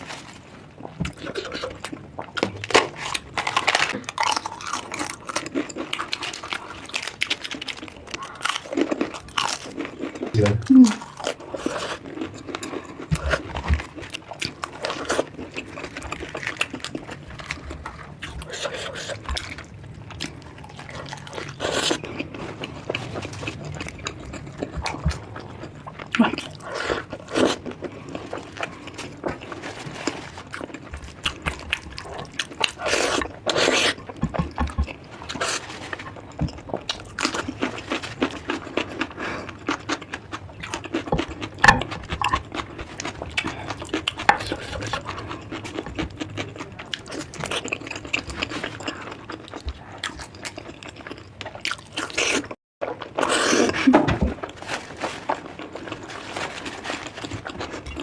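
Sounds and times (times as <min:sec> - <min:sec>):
person chewing and smacking: 0:00.0 - 0:58.0.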